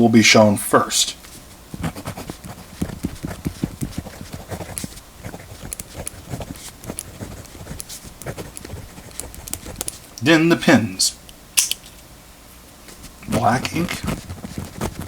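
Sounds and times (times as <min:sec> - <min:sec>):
pencil tapping and scratching paper: 0:01.7 - 0:10.1, 0:13.2 - 0:15.0
sharp pencil clicks: 0:02.8 - 0:10.3, 0:11.3 - 0:11.9.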